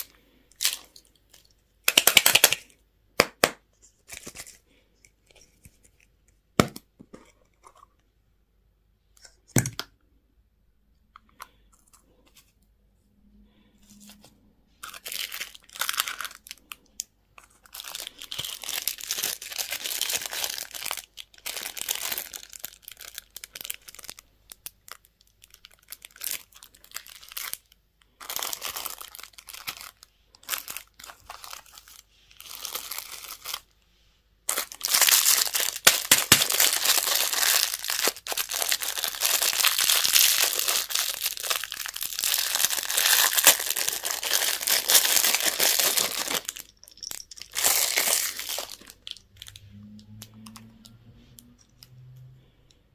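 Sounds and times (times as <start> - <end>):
wrappers crinkling and tearing: 0.0 - 2.7, 14.8 - 33.7, 34.5 - 52.2.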